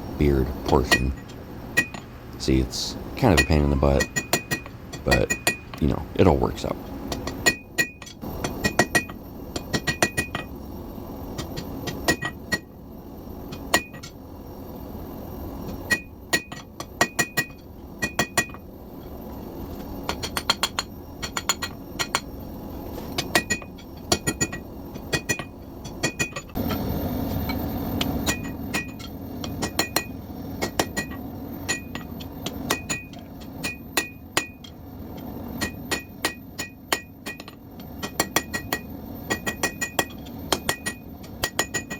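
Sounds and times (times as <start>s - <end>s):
hammer striking steel on anvil: 0.4s - 2.1s, 3.2s - 5.8s, 7.1s - 10.5s, 11.4s - 12.7s, 13.5s - 14.2s, 15.7s - 18.7s, 20.1s - 22.3s, 23.1s - 26.8s, 27.5s - 41.9s.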